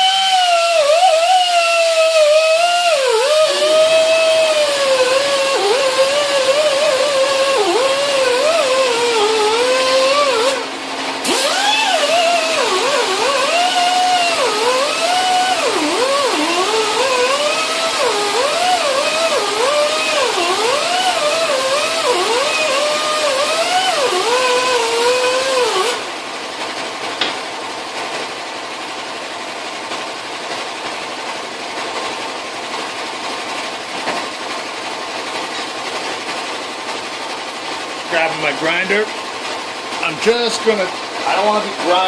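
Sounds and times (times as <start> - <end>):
high-speed rotary tool whining: 0.0 - 26.1.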